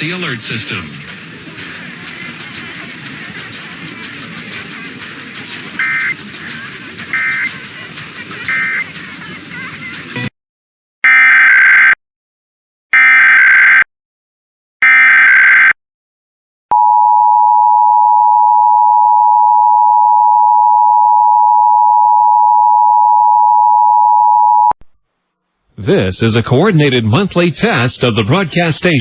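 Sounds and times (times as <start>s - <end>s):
two-tone attention signal: 7.2s - 7.5s.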